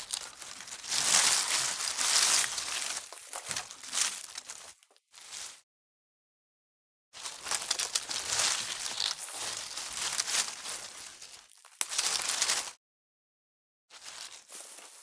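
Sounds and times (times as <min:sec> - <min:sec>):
dry twigs snapping: 0:00.0 - 0:00.6, 0:07.5 - 0:08.2, 0:11.7 - 0:12.5.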